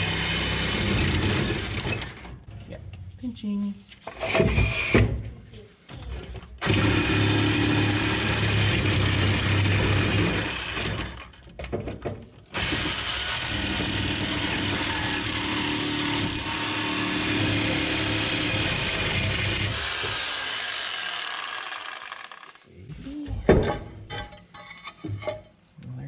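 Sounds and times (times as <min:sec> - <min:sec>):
reciprocating saw cutting metal: 0:00.0 - 0:02.2, 0:04.1 - 0:05.0, 0:06.6 - 0:11.2, 0:12.6 - 0:22.6.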